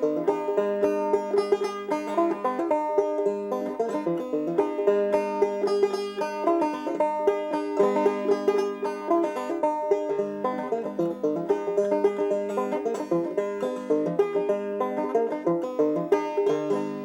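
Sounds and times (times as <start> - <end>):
banjo plucked notes: 0.0 - 17.0.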